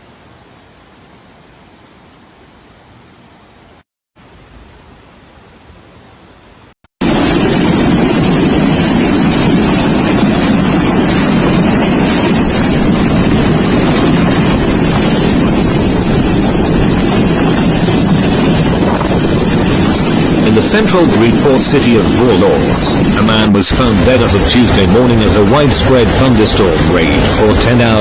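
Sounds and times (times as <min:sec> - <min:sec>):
storm wind and water rushing: 0:07.0 - 0:28.0.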